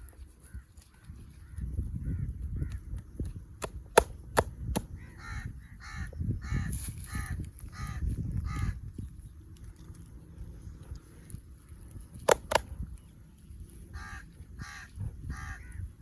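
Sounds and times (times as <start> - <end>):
bird cawing: 13.9 - 15.9.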